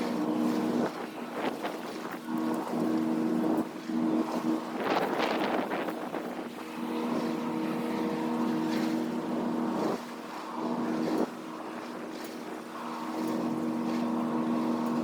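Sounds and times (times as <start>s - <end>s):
wind buffeting microphone: 0.0s - 11.8s.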